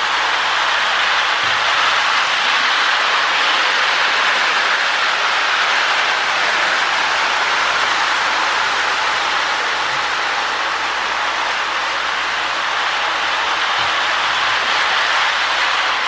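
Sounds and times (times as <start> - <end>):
model train whirring on rails: 0.0 - 16.0.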